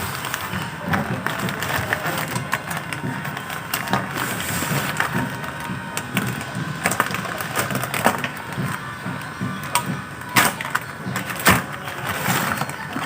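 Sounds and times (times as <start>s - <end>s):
packaging crackling and crinkling: 0.0s - 13.0s.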